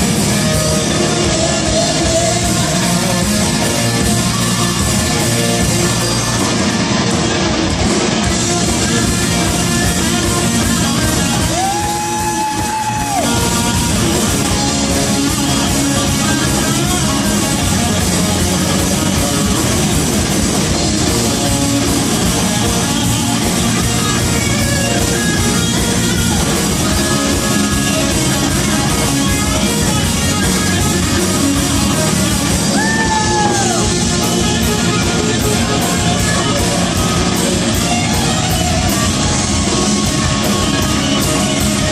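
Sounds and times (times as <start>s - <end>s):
drums: 0.0s - 41.9s
electric guitars: 0.0s - 41.9s
person singing: 0.2s - 4.8s, 8.4s - 19.9s.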